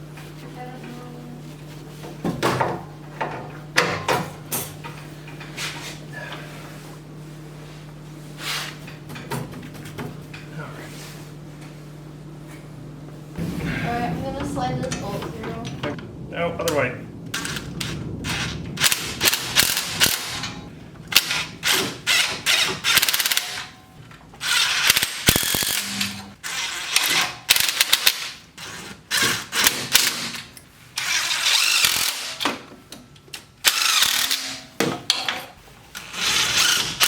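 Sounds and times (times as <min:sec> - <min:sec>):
ratchet wrench clicking: 0:21.2 - 0:23.7, 0:24.5 - 0:28.1, 0:33.6 - 0:34.6.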